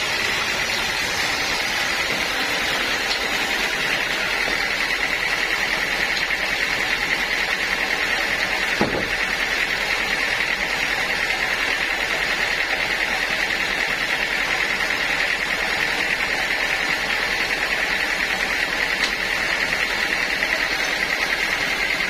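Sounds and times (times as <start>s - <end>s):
sawmill saw whining: 0.0s - 22.0s
short knock: 8.8s - 9.1s.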